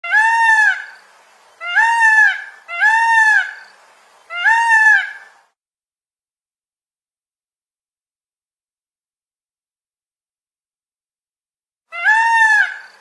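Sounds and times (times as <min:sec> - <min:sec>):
peacock calling: 0:00.0 - 0:05.4, 0:11.9 - 0:13.0.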